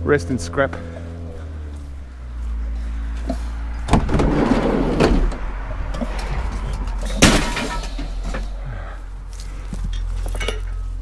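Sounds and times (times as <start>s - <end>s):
steady low rumble: 0.0s - 11.0s
door slamming: 3.8s - 5.6s
sliding door rolling on track: 3.8s - 8.5s.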